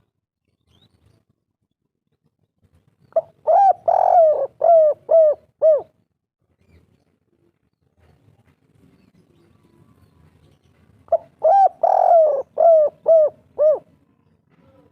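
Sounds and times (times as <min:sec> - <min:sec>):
dove cooing: 0:03.2 - 0:06.0, 0:11.1 - 0:14.0.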